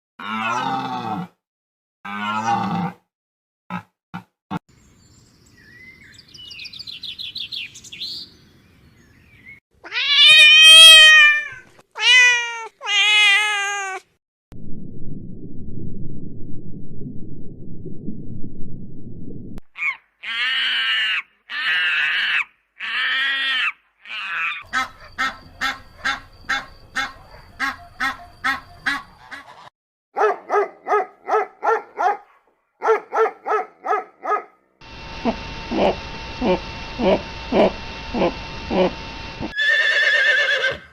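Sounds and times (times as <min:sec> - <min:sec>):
waterfowl honking calls: 0:24.6 - 0:29.7.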